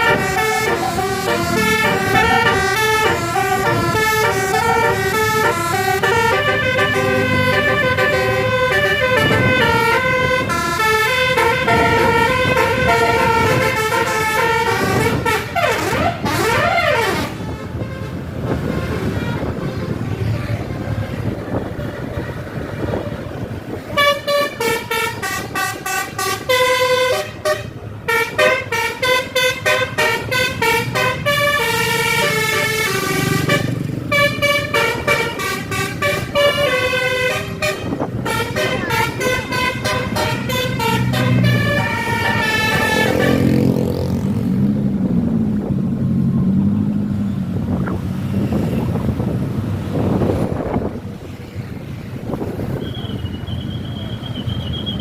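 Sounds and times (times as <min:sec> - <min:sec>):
multi-tone air horn tune: 0:00.0 - 0:20.0, 0:24.0 - 0:43.7
bus engine and road noise: 0:00.0 - 0:55.0.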